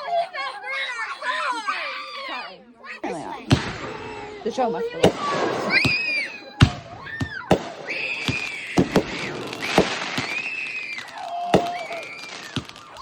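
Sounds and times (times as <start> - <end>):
fireworks bangs and pops: 3.1 - 13.0
fireworks whistling: 3.1 - 13.0.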